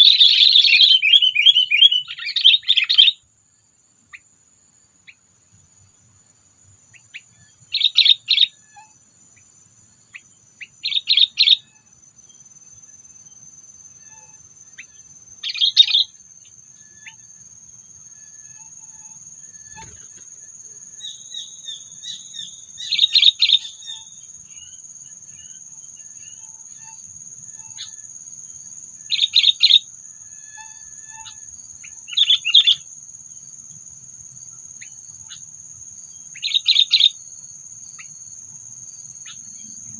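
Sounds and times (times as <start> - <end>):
bird calling: 0.0 - 3.2, 14.1 - 16.2
high-pitched insect drone: 5.0 - 39.9.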